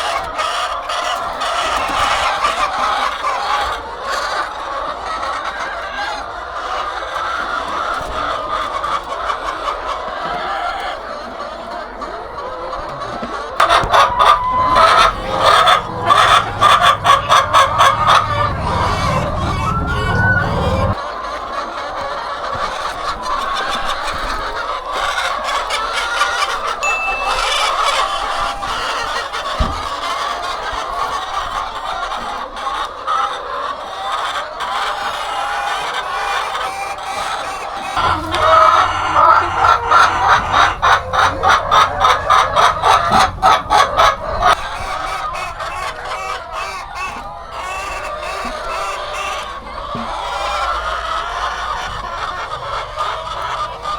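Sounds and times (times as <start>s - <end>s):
hens clucking: 0.0s - 53.9s
low rumble: 14.4s - 21.0s.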